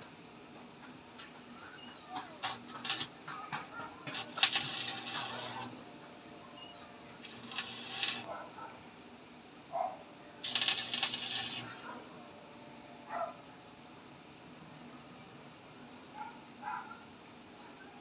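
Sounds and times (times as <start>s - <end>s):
welding arc crackling and sizzling: 2.4s - 3.2s, 4.1s - 5.8s, 7.2s - 8.3s, 10.4s - 11.8s.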